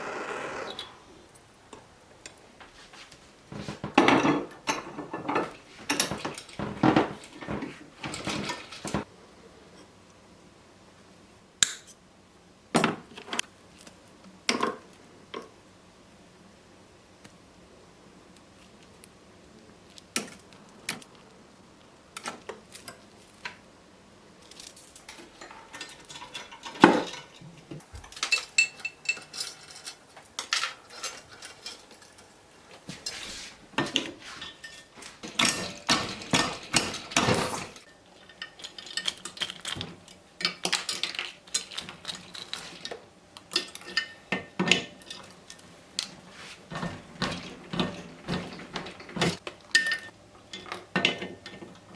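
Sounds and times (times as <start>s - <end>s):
chain links clinking: 24.4s - 32.4s, 34.4s - 40.1s.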